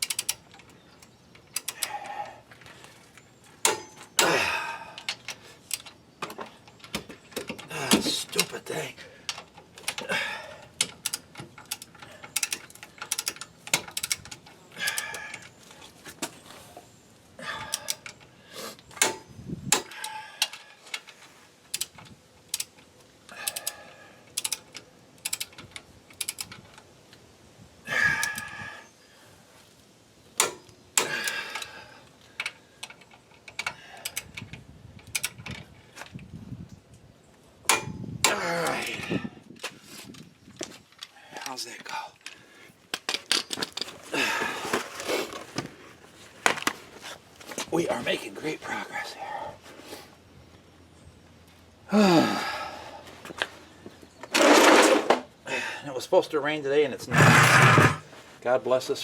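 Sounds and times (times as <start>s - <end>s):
ratcheting sounds: 0.0s - 0.7s, 10.8s - 15.5s, 57.1s - 58.1s
metal clicks and clinks: 0.0s - 2.0s, 10.7s - 15.6s, 21.7s - 26.8s, 32.4s - 35.6s.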